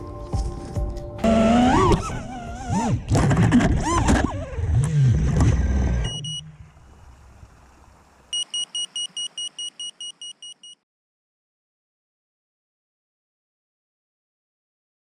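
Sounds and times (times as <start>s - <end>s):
drone motors whining and revving: 1.2s - 6.6s
electronic beeps: 6.0s - 6.4s, 8.3s - 10.8s.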